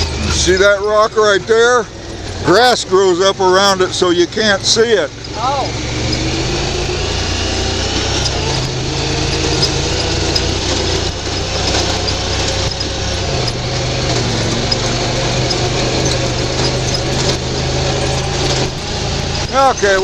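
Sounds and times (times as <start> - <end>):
knocks and rattles: 0.0 - 20.0
utility vehicle engine running: 0.0 - 20.0.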